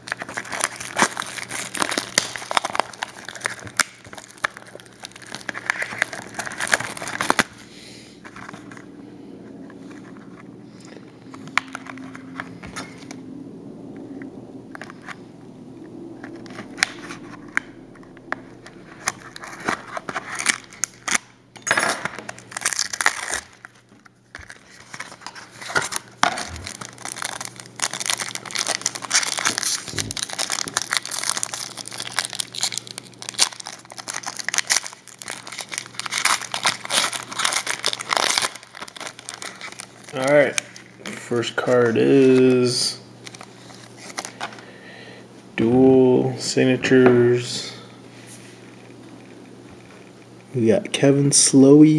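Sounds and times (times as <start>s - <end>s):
wrapper crinkling: 0.0s - 8.9s, 16.2s - 21.4s, 22.0s - 44.7s.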